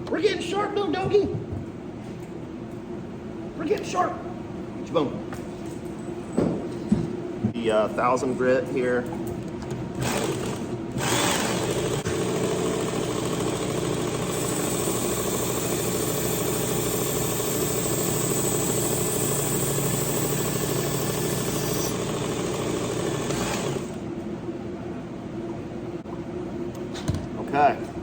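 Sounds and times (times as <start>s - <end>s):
belt sharpener grinding knife: 11.0s - 24.0s.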